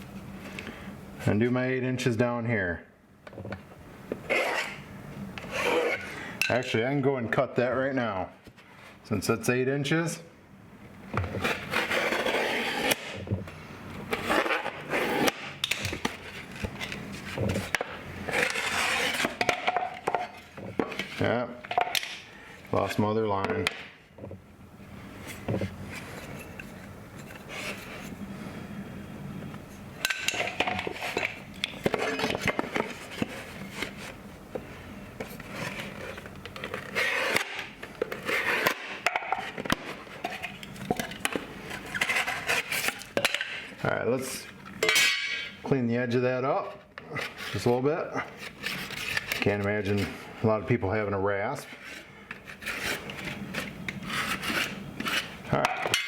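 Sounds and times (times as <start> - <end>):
knife scraping drywall: 4.3 - 4.8, 5.4 - 6.1, 11.3 - 13.2, 14.1 - 15.6, 16.2 - 21.3, 35.3 - 39.6, 41.8 - 43.1, 51.7 - 55.4.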